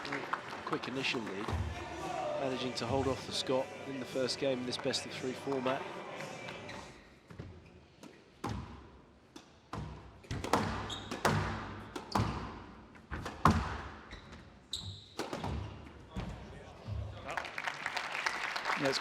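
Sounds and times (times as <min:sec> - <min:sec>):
shoes squeaking on court floor: 0:06.5 - 0:08.8, 0:09.4 - 0:16.4
squash ball cracking off rackets: 0:09.4 - 0:14.0.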